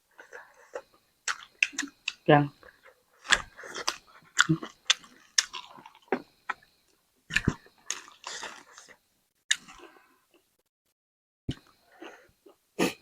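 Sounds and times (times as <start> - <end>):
person chewing and biting: 0.3 - 6.7, 7.3 - 10.1.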